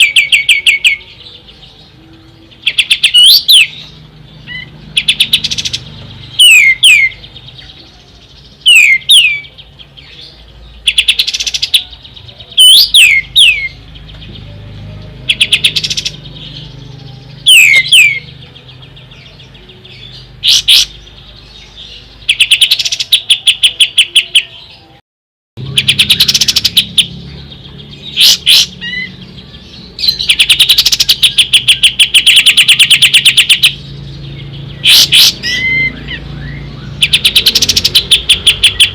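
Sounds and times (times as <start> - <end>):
fast rattling trills: 25.6 - 36.0, 36.9 - 38.9.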